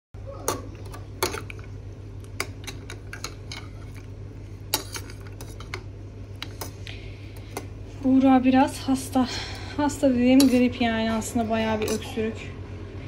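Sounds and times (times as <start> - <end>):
steady low hum: 0.2 - 13.0
dishes and utensils clinking: 0.4 - 1.7, 4.7 - 6.8, 10.3 - 12.2.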